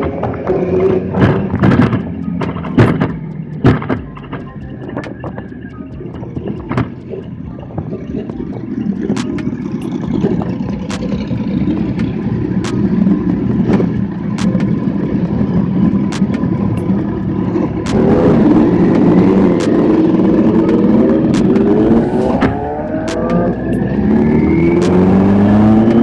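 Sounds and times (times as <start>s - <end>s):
vehicle engine rumbling and revving: 0.0s - 26.0s
sharp clicks: 8.2s - 17.1s, 17.9s - 22.0s.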